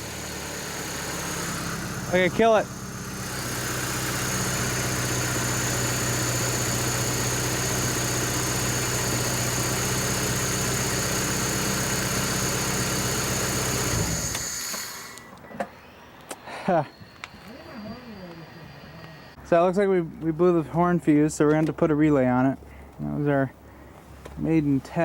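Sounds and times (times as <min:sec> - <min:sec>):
electric compressor pump whining: 0:00.0 - 0:19.7.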